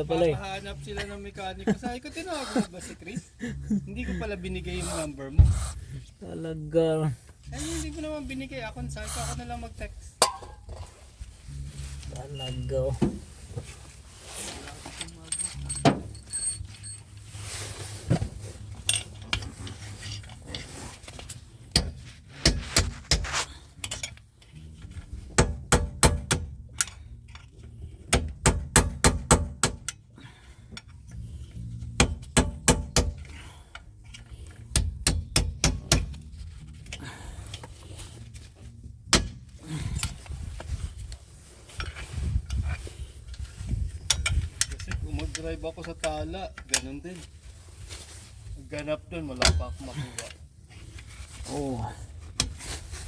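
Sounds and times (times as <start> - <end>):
metal tools striking metal: 10.2 - 10.7.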